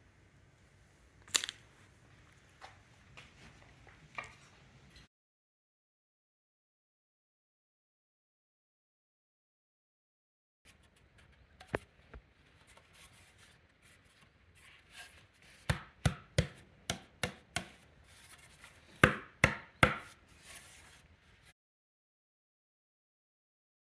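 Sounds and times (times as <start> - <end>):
faint scraping and rubbing: 10.7 - 15.7, 17.7 - 19.0, 20.0 - 21.5
hand tool knocking on wood: 15.7 - 17.8, 19.0 - 20.1.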